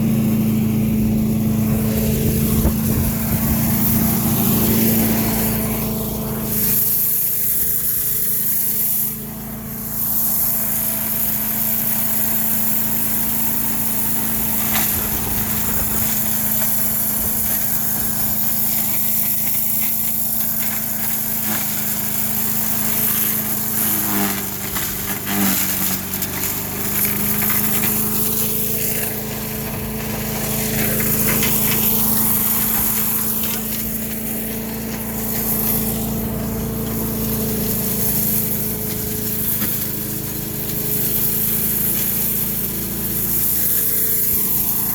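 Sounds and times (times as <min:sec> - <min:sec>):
wood chipper engine running: 0:00.0 - 0:44.9.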